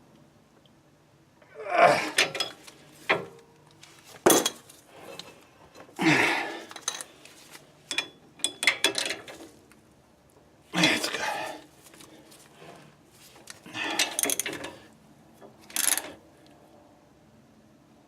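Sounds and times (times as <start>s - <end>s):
wrench and steel parts clinking: 2.1s - 2.6s, 6.7s - 7.1s, 7.9s - 9.4s, 13.8s - 14.8s, 15.7s - 16.2s.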